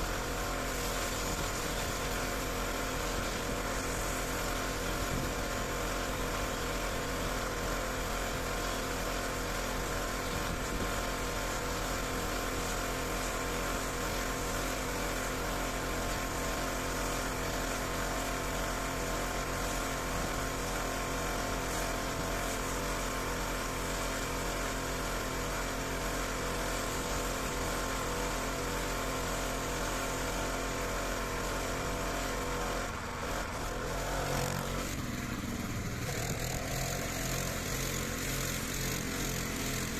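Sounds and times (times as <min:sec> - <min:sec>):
pressure washer engine: 0:00.0 - 0:39.9.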